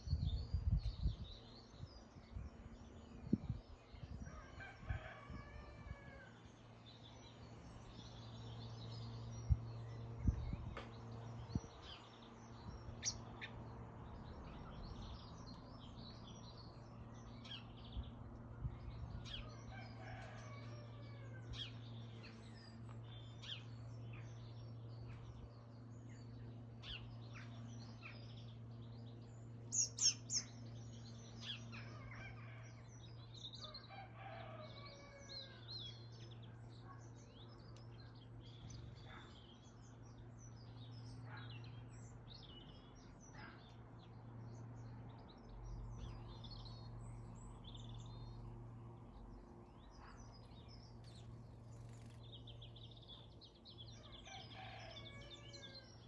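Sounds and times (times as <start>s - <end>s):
sparrows chirping: 0.0s - 5.2s, 5.9s - 56.0s
rooster crowing: 4.3s - 6.4s, 19.5s - 21.6s, 54.0s - 56.0s.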